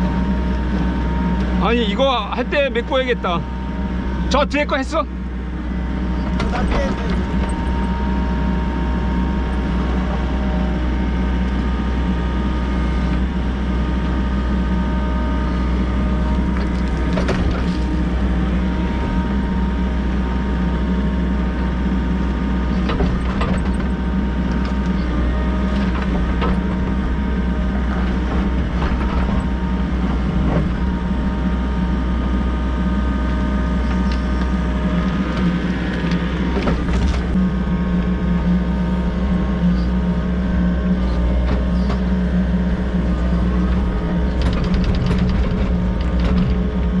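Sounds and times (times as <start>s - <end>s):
excavator diesel engine running: 0.0s - 47.0s.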